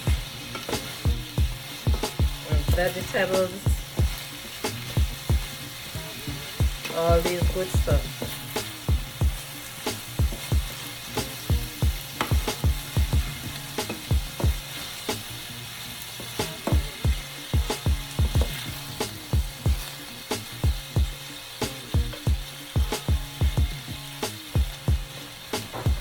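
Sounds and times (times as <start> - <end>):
vegetables sizzling in a pan: 0.0 - 26.0
utensil knocking against pan: 0.1 - 2.9, 6.6 - 15.3, 16.2 - 19.9.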